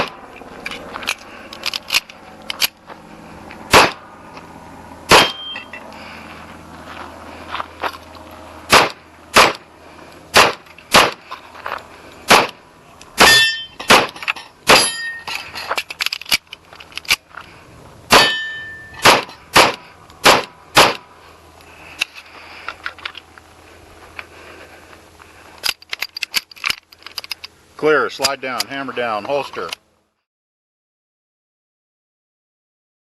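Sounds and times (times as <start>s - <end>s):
pistol shots: 3.7s - 4.0s, 5.1s - 5.5s, 8.7s - 9.6s, 10.3s - 11.2s, 12.3s - 12.6s, 13.2s - 15.0s, 18.1s - 21.0s
steel target ringing: 5.1s - 5.8s, 13.2s - 15.4s, 18.1s - 19.8s.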